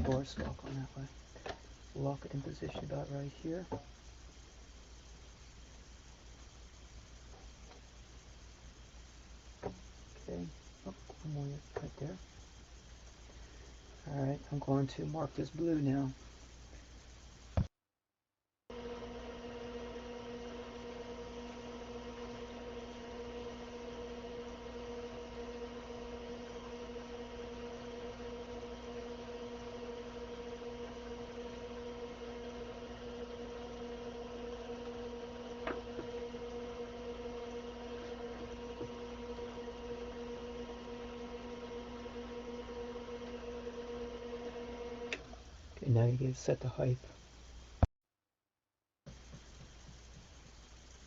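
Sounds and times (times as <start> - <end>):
electrical equipment humming: 0.0 - 7.9, 18.7 - 47.9.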